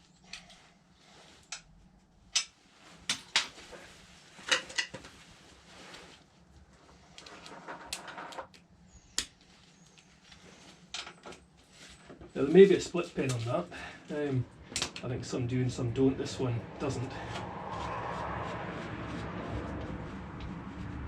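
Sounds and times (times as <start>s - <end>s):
rustle of handling: 0.1s - 8.4s, 9.3s - 15.5s.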